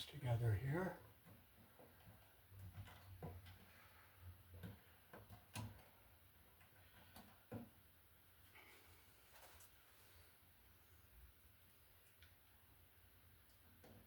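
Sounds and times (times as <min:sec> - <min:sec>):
wires clicking and tapping: 0:01.0 - 0:07.9.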